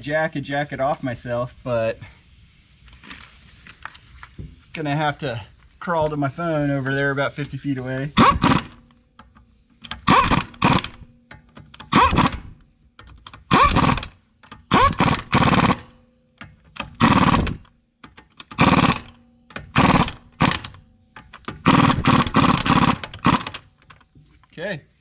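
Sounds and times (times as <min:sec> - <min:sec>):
impact wrench bursts: 0:08.2 - 0:08.9, 0:09.8 - 0:16.0, 0:16.7 - 0:23.9.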